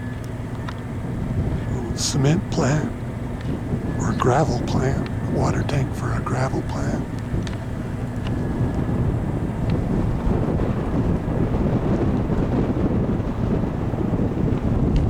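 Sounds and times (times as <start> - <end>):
wind buffeting microphone: 7.0 - 15.0.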